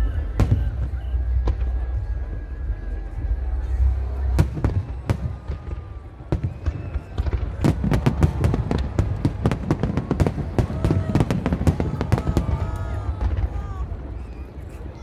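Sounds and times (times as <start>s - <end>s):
low rumble: 0.0s - 6.6s
faint people's voices: 0.0s - 15.0s
fireworks bangs and crackles: 0.0s - 15.0s.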